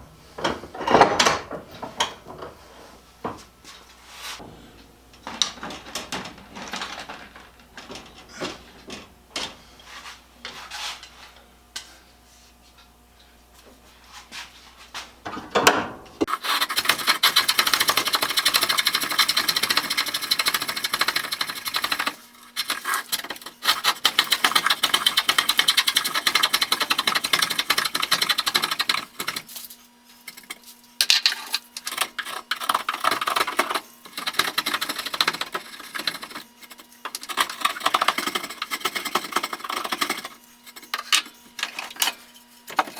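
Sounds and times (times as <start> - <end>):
hand tool scraping wood: 16.2 - 42.9.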